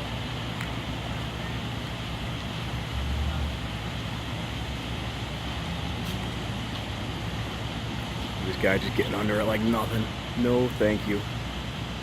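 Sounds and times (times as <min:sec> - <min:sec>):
heavy machinery engine rumble: 0:00.0 - 0:12.0.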